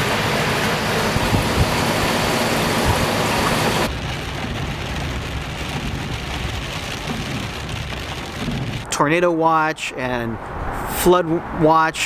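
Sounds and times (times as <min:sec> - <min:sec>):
heavy rain pouring: 0:00.0 - 0:09.0.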